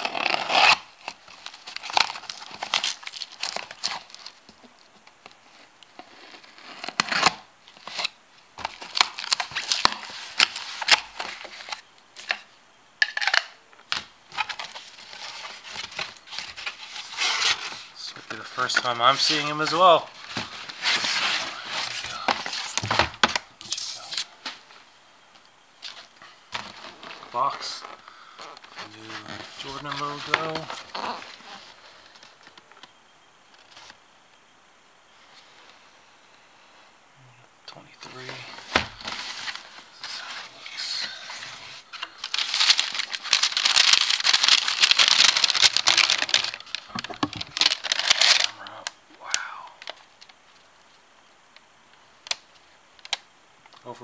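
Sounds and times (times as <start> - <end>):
paper and cardboard rustling: 14.3 - 24.7, 28.6 - 32.6, 38.1 - 48.5.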